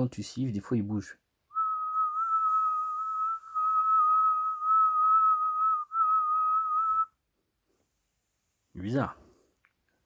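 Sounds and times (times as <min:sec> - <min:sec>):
person whistling high note: 0:01.5 - 0:07.2.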